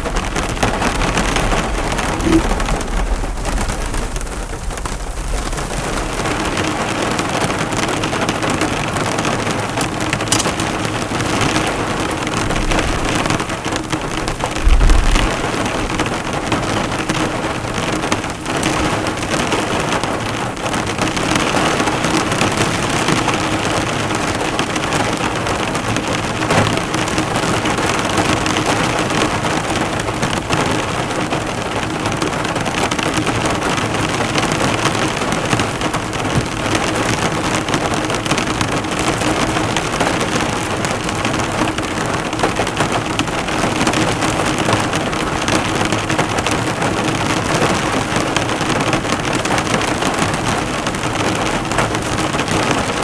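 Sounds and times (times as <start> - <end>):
low rumble: 0.0 - 6.7, 14.2 - 16.4
heavy rain drumming on car: 0.0 - 53.0
low thump: 2.0 - 4.6, 14.6 - 15.6.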